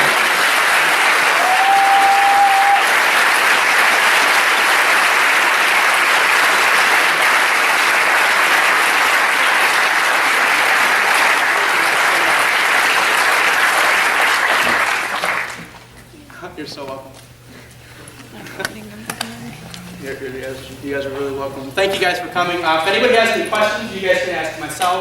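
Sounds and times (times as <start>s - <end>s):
audience applauding: 0.0s - 15.9s.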